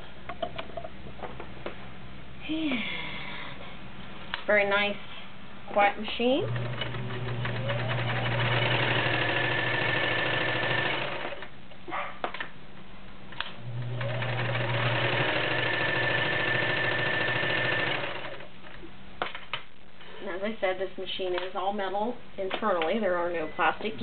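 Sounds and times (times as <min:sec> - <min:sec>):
sewing machine running: 0:06.4 - 0:11.5, 0:13.6 - 0:18.5.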